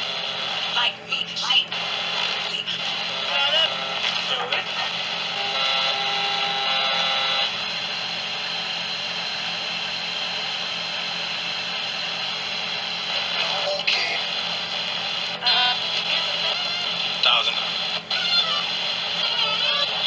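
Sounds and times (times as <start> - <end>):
radio static hiss: 0.0 - 20.0
faint voice: 0.6 - 5.0, 13.3 - 14.4, 15.4 - 20.0.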